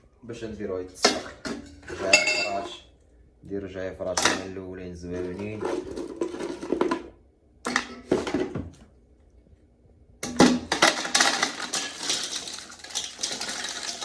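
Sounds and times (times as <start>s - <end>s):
pot and utensils clinking: 1.0s - 2.8s, 4.1s - 4.5s, 10.2s - 14.0s
utensils rattling and scraping in pot: 1.0s - 2.8s, 4.1s - 4.5s, 5.1s - 7.1s, 7.7s - 8.6s, 10.2s - 14.0s.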